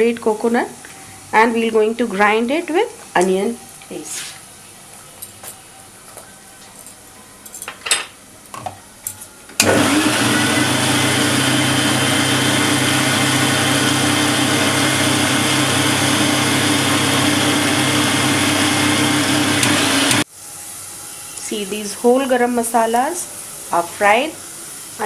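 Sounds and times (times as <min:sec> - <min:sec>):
electric mixer grinder running: 0:09.6 - 0:20.2.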